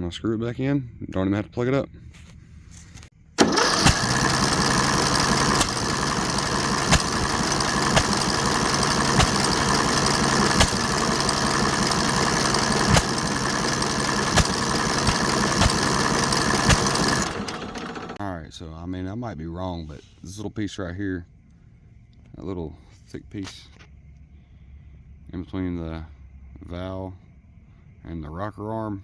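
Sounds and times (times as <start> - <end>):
electric starter cranking engine: 3.4 - 18.2.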